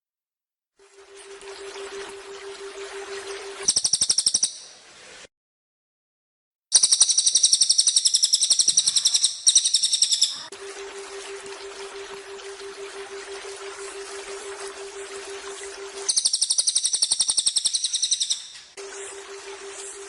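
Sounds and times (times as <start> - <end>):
bird singing fast trill: 3.7 - 4.7, 6.7 - 10.5, 16.1 - 18.7
low hum: 10.5 - 16.1
rushing waterfall: 10.5 - 16.1.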